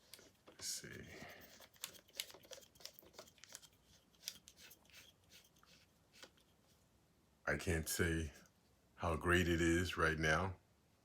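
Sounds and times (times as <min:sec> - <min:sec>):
camera handling clicks and rustles: 0:00.0 - 0:06.6.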